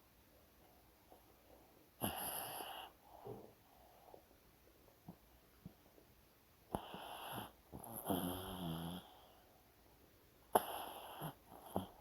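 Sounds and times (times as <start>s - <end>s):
dog snoring: 2.0s - 3.5s, 6.7s - 9.4s, 10.5s - 12.0s.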